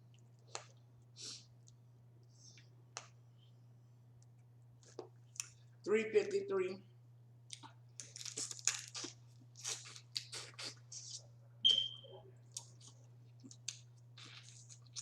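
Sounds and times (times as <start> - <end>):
chewing and mouth smacks: 0.1 - 0.9, 4.2 - 5.7, 7.4 - 11.2, 12.4 - 15.0
shells cracking and peeling: 7.6 - 10.3.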